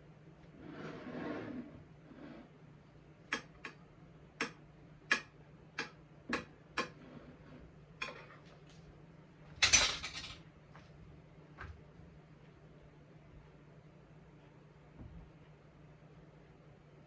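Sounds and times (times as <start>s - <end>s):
dishes clattering: 9.6s - 10.4s
utensils clinking against dishes: 9.6s - 10.4s.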